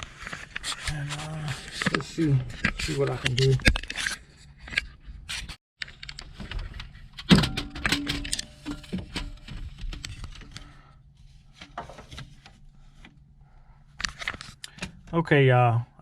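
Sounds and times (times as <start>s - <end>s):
tools and wiring handling clicks: 2.7s - 10.7s
low steady hum: 6.0s - 15.9s.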